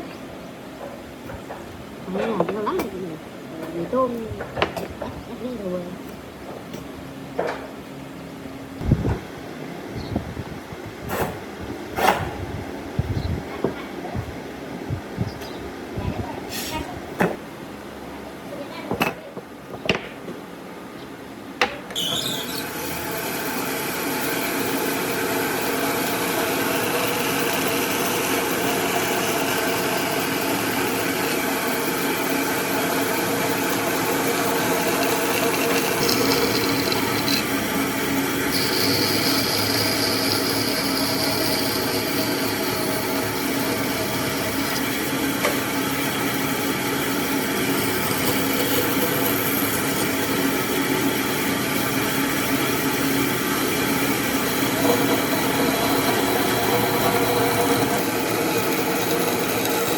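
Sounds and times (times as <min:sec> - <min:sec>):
power tool running against wood: 0:22.1 - 0:59.9.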